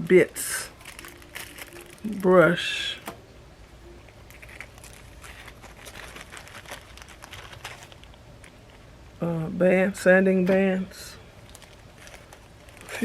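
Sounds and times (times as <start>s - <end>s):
rustling of small bag: 0.8s - 2.3s, 4.3s - 8.8s, 11.4s - 13.0s.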